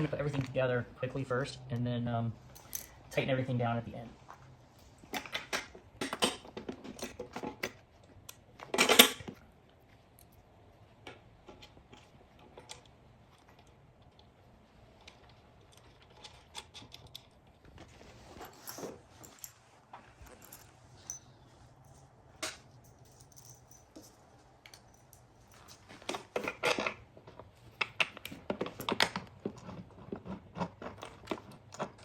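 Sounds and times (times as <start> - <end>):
metal parts clinking and rattling: 2.4 - 3.2, 4.9 - 9.4, 20.2 - 27.0.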